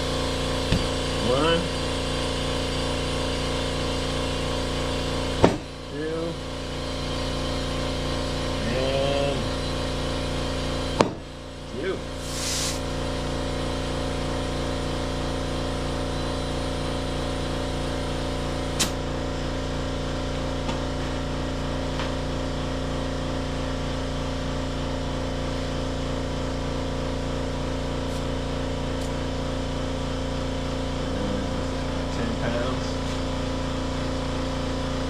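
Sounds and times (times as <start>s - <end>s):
air compressor running: 0.0s - 35.0s
sharp click: 18.8s - 19.0s.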